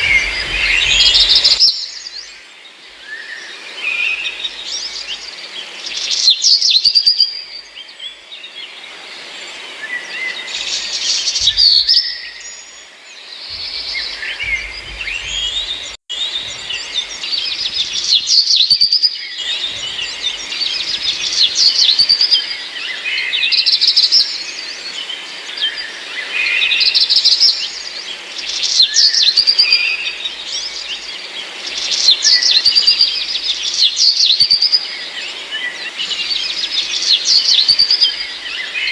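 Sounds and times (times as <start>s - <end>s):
flock of starlings chirping: 0.0s - 38.9s.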